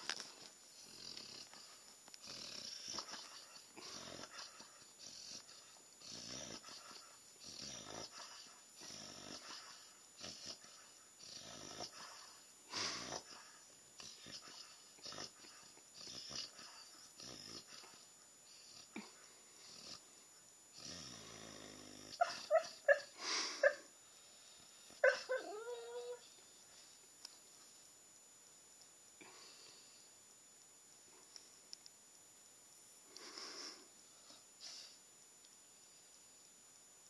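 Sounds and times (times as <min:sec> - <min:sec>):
puppy making breathy sleep noises: 0:00.0 - 0:27.0, 0:33.1 - 0:35.1.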